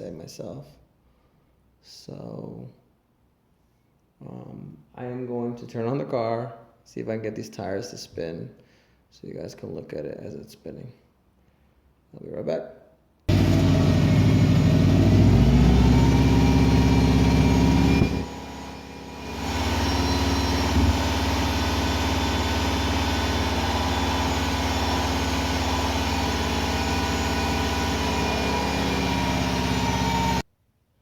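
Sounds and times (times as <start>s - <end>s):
turbocharged car engine revving: 13.3s - 30.4s.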